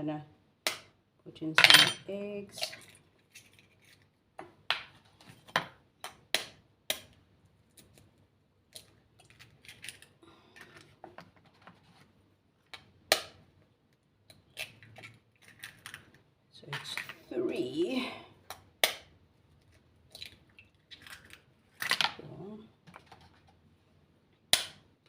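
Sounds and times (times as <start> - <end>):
kitchenware clinking: 1.6 - 2.7.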